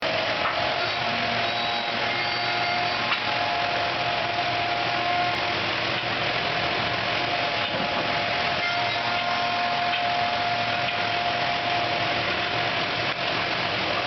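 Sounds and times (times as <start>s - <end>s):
router spindle whine: 0.0s - 14.0s.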